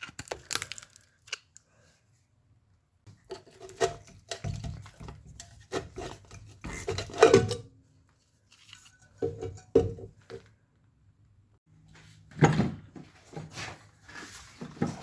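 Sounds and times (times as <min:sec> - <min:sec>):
scraping and knocking on metal: 0:03.1 - 0:07.7, 0:08.9 - 0:10.5.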